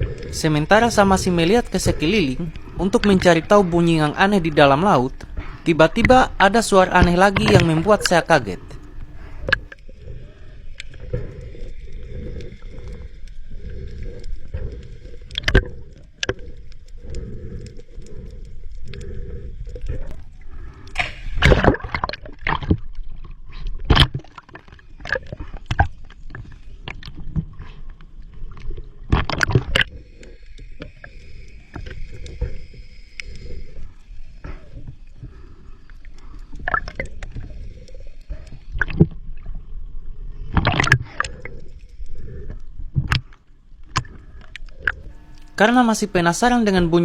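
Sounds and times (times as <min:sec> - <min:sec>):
underwater rumble: 0:00.0 - 0:47.0
underwater clicks and knocks: 0:05.1 - 0:08.2, 0:08.8 - 0:09.8, 0:15.3 - 0:16.8, 0:20.9 - 0:30.0, 0:38.4 - 0:39.5, 0:40.4 - 0:41.6, 0:42.9 - 0:45.6.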